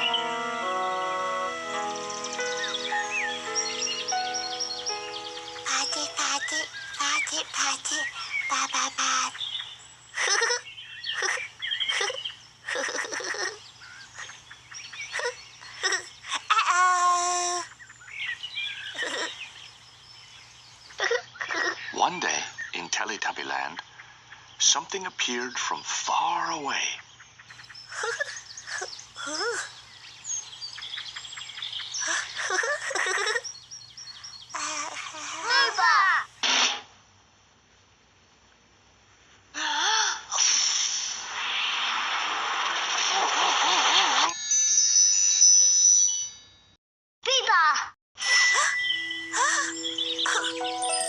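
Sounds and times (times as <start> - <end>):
birds chirping and tweeting: 0.0 - 36.4, 48.3 - 51.0.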